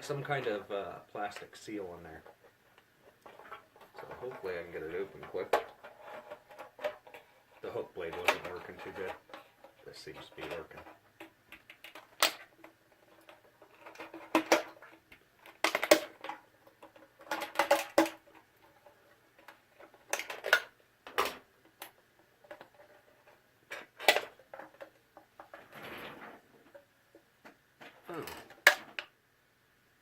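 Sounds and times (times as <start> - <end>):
drink can scraping and crunching: 3.1 - 18.5.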